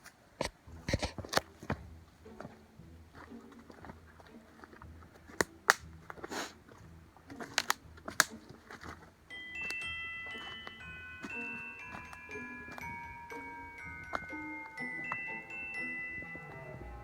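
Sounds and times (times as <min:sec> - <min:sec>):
chime tones ringing: 0:09.3 - 0:17.0.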